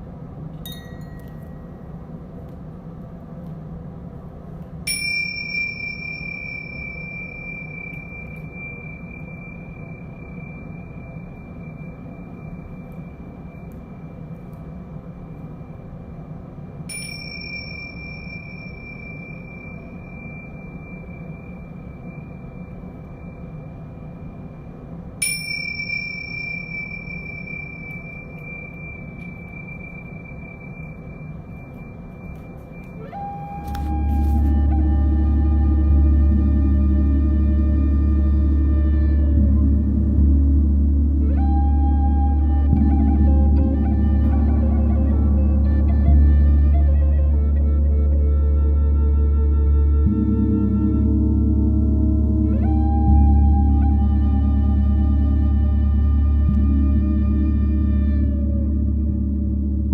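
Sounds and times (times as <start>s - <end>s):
metal bell ringing: 0.6s - 1.8s, 4.9s - 11.6s, 16.9s - 22.1s, 25.2s - 30.8s
low gong hum: 4.8s - 59.9s.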